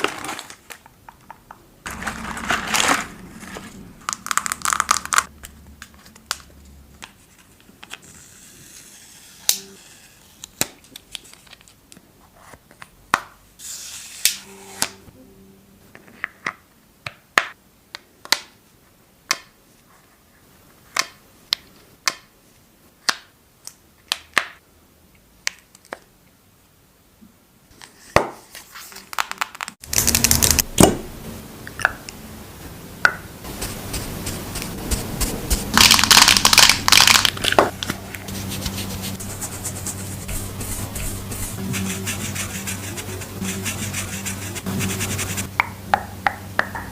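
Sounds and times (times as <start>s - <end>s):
rubbing and crinkling: 0.0s - 0.9s, 1.9s - 8.4s, 33.4s - 45.5s.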